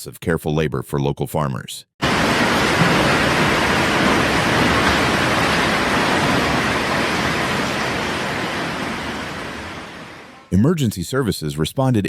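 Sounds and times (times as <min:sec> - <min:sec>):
heavy rain downpour: 0:02.0 - 0:10.5.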